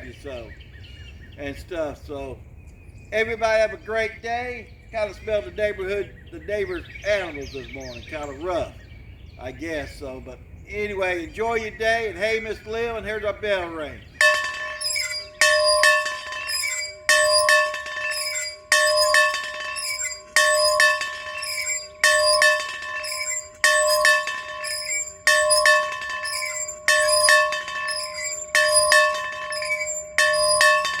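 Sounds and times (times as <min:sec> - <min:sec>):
bell ringing: 0:14.2 - 0:31.0.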